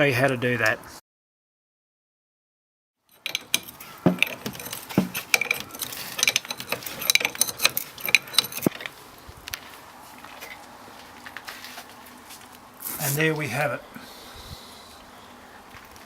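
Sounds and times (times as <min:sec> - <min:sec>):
spanner clicking on metal: 0:03.1 - 0:08.9.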